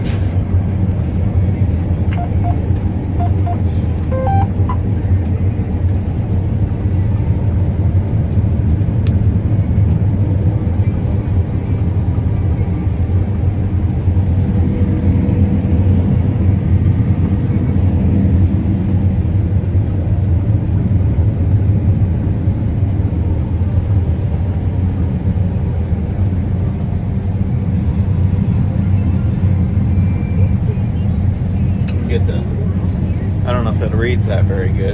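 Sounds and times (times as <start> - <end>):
combine harvester humming: 0.0 - 34.9
short high beeps: 2.1 - 2.6, 3.2 - 4.8.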